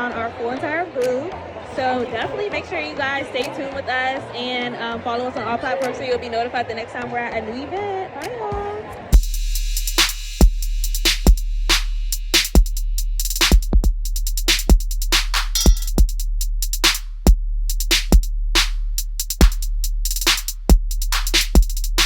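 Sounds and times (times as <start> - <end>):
hip hop drum machine beat: 9.1 - 22.0.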